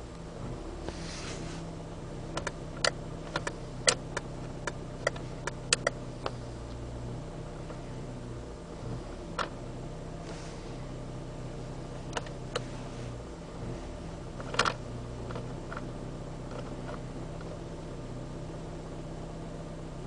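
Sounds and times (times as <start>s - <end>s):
car engine idling: 0.0s - 20.0s
sharp clicks: 2.3s - 6.4s.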